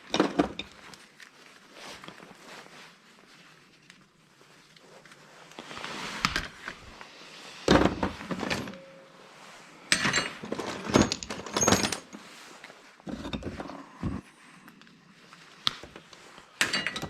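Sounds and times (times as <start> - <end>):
scrap metal parts clattering: 9.9 - 12.3, 16.6 - 17.0.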